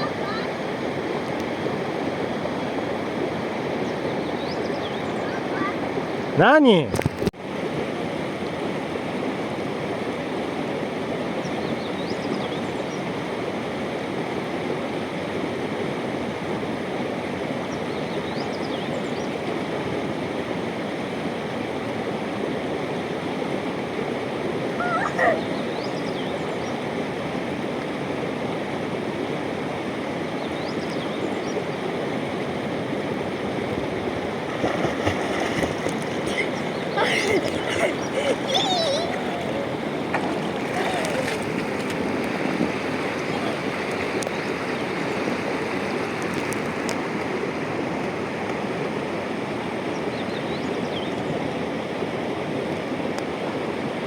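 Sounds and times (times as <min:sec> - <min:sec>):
river water rushing: 0:00.0 - 0:06.8, 0:19.0 - 0:50.0.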